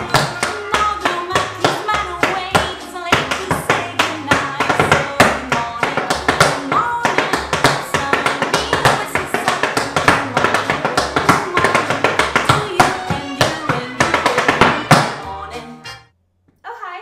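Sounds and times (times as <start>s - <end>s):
tap shoes striking the floor: 0.0s - 15.2s
acoustic backing music: 7.8s - 16.2s.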